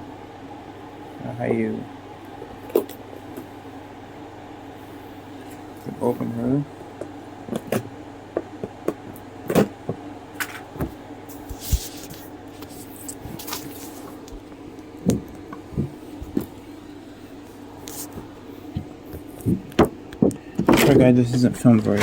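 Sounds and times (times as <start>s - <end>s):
steady low hum: 0.0s - 22.0s
packaging rustling: 11.4s - 14.5s.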